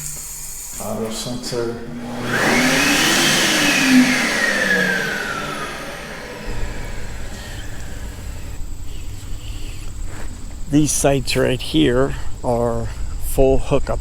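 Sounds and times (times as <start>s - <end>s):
electric hand dryer whirring: 0.0s - 8.9s.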